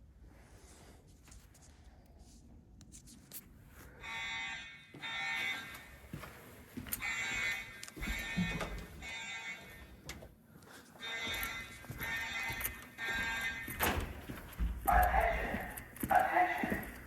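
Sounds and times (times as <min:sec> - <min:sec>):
fire alarm evacuation tone: 0:04.0 - 0:10.2, 0:11.0 - 0:17.0.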